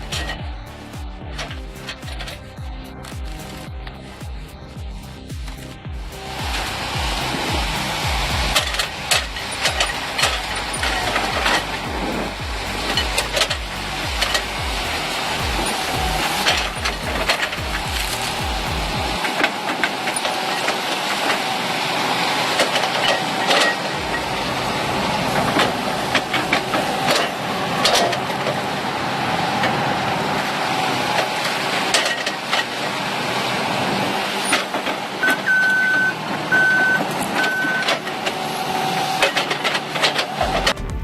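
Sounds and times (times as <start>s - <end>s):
heavy machine engine running: 0.0s - 41.0s
reversing alarm beeping: 5.1s - 19.3s, 35.2s - 39.2s.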